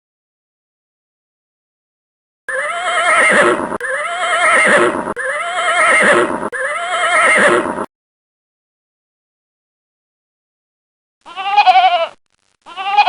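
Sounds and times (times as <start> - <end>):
horse whinnying: 2.5 - 7.9.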